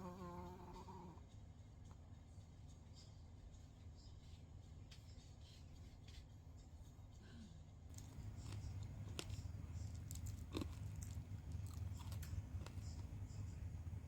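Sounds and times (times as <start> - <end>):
dog chewing food: 7.9 - 14.0.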